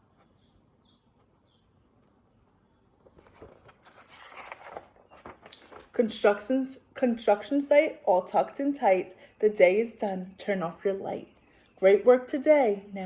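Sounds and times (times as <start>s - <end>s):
book pages rustling: 3.0s - 6.0s.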